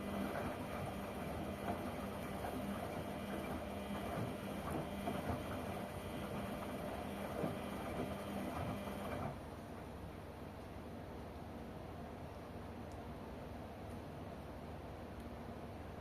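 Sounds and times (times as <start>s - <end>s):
washing machine motor humming: 0.0s - 9.6s.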